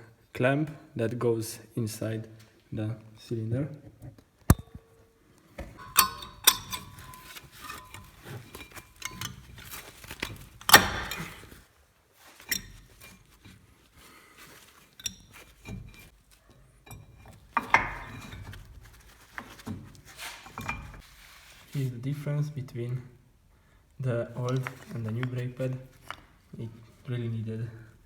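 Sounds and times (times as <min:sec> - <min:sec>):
metallic clinks and scrapes: 0:05.6 - 0:11.6, 0:12.2 - 0:21.2.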